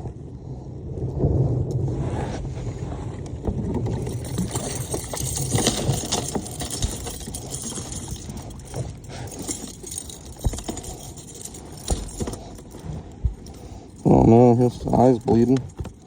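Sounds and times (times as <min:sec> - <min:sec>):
wind rush: 0:00.0 - 0:06.5
fish knocking and rattling in kayak: 0:03.2 - 0:14.0, 0:14.8 - 0:16.0.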